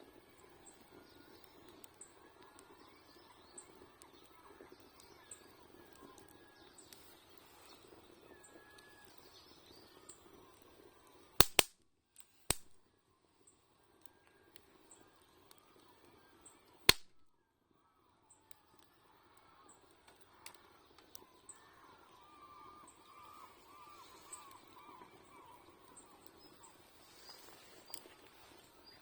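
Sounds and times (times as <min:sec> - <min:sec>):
fire crackling: 0:00.1 - 0:12.8, 0:13.9 - 0:17.3, 0:18.7 - 0:29.0
wood popping in bonfire: 0:10.0 - 0:12.8, 0:14.0 - 0:17.2, 0:19.6 - 0:22.0
birds chirping faintly: 0:12.9 - 0:29.0.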